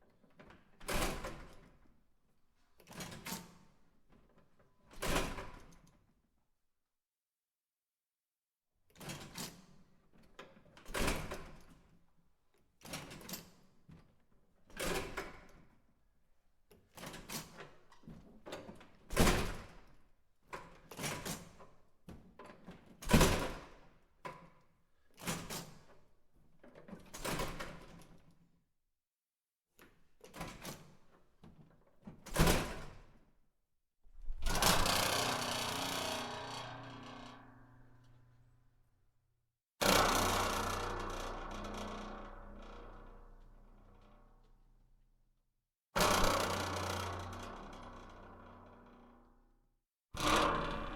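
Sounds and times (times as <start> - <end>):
door being shut: 34.2 - 38.3
door rattling: 34.2 - 38.3.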